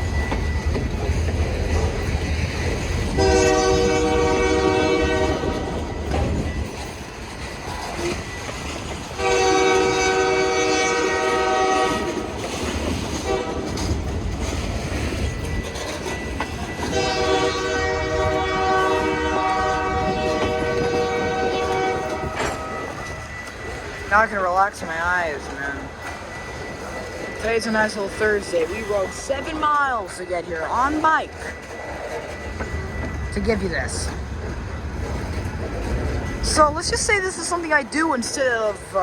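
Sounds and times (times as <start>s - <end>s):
train wheels clattering on rails: 0.0s - 39.0s
locomotive air horn blasts: 3.1s - 5.8s, 9.2s - 12.4s, 13.2s - 13.7s, 16.9s - 23.0s.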